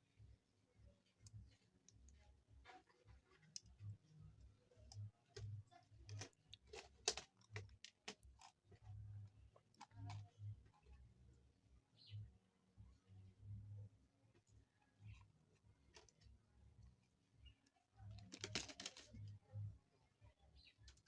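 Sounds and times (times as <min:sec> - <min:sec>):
plastic phone parts clicking: 0:04.9 - 0:08.6, 0:18.2 - 0:19.3.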